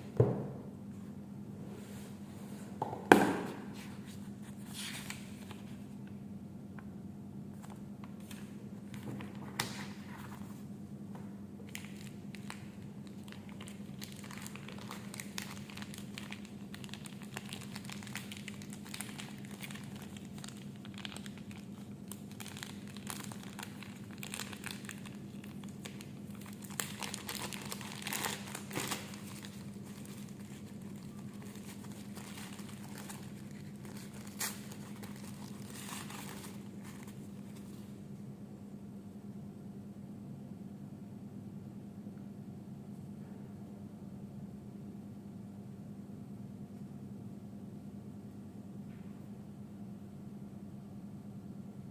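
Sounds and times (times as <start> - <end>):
packaging crinkling: 11.6 - 37.9.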